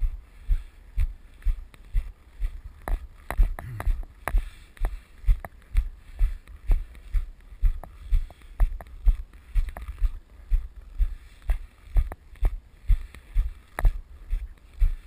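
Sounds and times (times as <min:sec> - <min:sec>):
footsteps walking: 0:00.0 - 0:15.0.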